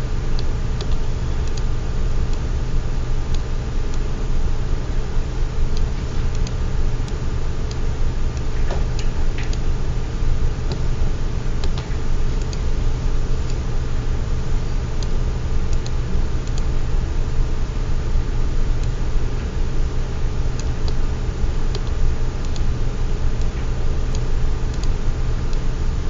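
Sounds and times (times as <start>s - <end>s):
low hum and hiss: 0.0s - 26.0s.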